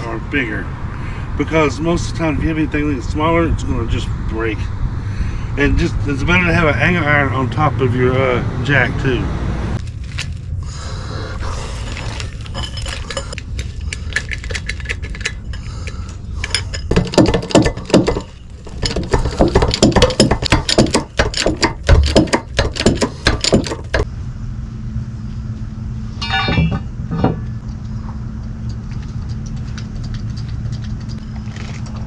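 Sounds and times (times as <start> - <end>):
metal clinking and clanking: 11.3 - 15.7, 16.4 - 24.0, 26.2 - 27.5.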